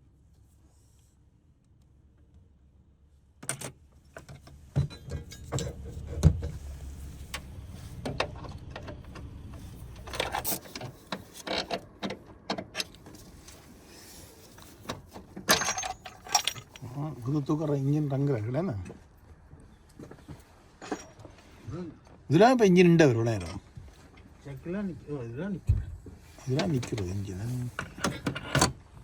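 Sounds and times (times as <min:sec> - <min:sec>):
metal tools clinking: 0:10.0 - 0:11.7, 0:14.4 - 0:17.7.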